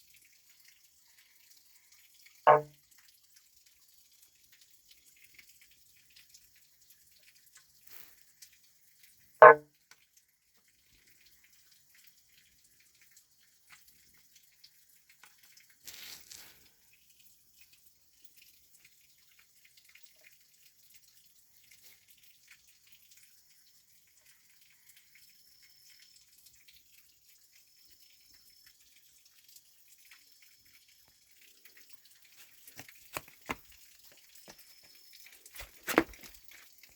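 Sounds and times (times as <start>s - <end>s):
soft drip-like clicks: 0.0s - 36.9s
frog calls: 2.5s - 2.7s
short high note: 2.5s - 2.7s.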